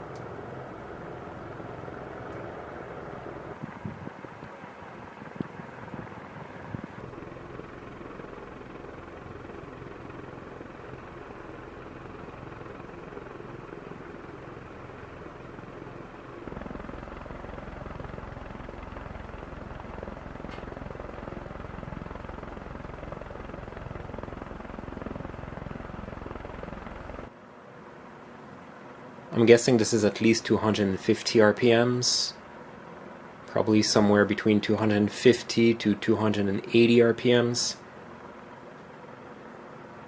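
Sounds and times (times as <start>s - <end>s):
ceiling fan blades whooshing: 0.0s - 40.0s
deep rumble: 5.9s - 27.3s.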